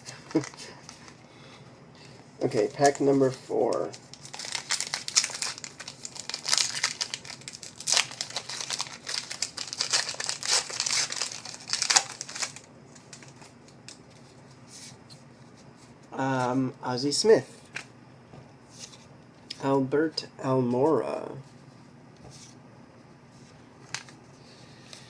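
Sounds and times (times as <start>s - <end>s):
wrapper tearing and crinkling: 3.7s - 13.6s.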